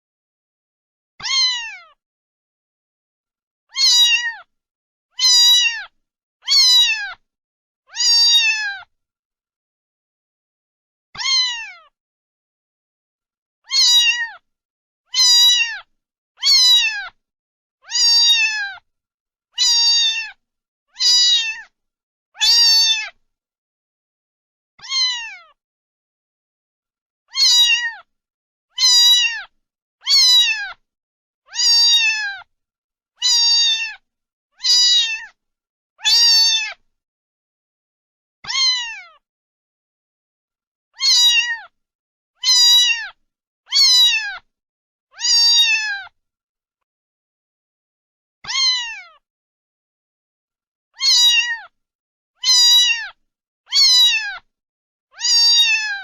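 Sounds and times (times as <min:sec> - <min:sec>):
cat meowing: 0:01.2 - 0:02.0, 0:03.7 - 0:04.5, 0:05.2 - 0:07.2, 0:07.9 - 0:08.9, 0:11.2 - 0:12.0, 0:13.6 - 0:14.4, 0:15.1 - 0:17.2, 0:17.8 - 0:18.8, 0:19.6 - 0:21.7, 0:22.4 - 0:23.2, 0:24.8 - 0:25.6, 0:27.3 - 0:28.1, 0:28.7 - 0:30.8, 0:31.5 - 0:32.5, 0:33.2 - 0:34.0, 0:34.6 - 0:35.4, 0:36.0 - 0:36.8, 0:38.4 - 0:39.2, 0:41.0 - 0:41.8, 0:42.4 - 0:44.5, 0:45.1 - 0:46.2, 0:48.4 - 0:49.2, 0:51.0 - 0:51.8, 0:52.4 - 0:54.5, 0:55.1 - 0:56.0.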